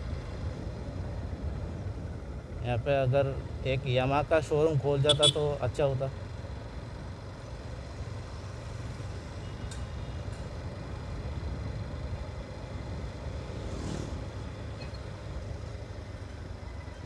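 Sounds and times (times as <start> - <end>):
road noise: 0.0 - 17.0.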